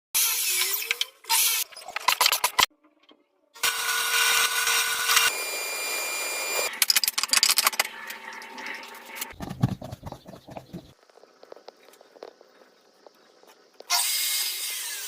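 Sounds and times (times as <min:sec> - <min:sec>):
power tool whining: 0:03.6 - 0:06.7
quick clicks and knocks: 0:09.4 - 0:11.0.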